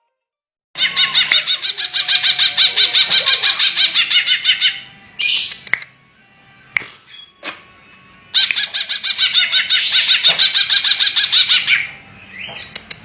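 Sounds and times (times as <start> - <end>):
bird singing rapid repeated notes: 0.8 - 5.9, 6.9 - 7.4, 8.3 - 13.0.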